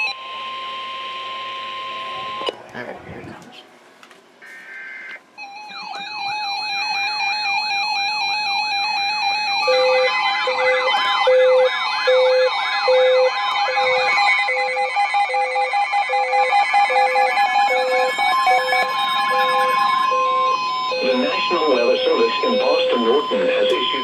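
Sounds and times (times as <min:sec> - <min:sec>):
steady alert tones: 0:04.4 - 0:24.0
warbling siren tone: 0:04.4 - 0:24.0
pulsing beep: 0:05.4 - 0:07.5, 0:08.5 - 0:24.0.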